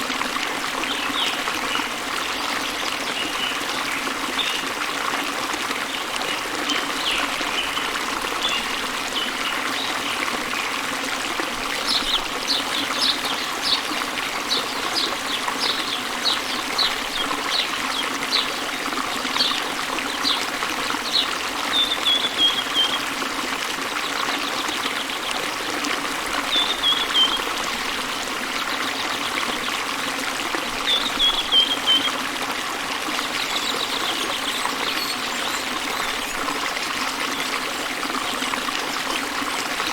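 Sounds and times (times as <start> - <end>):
water rushing over small waterfall: 0.0 - 39.9
bird chirping and trilling: 21.1 - 23.0.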